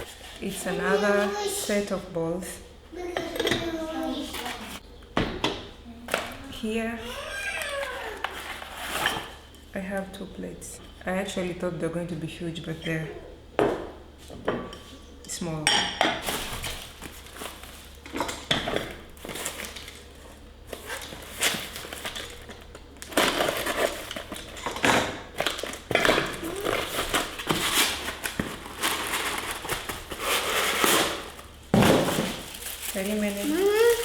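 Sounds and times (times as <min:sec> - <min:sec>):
packing material rustling and crinkling: 0:16.2 - 0:34.0.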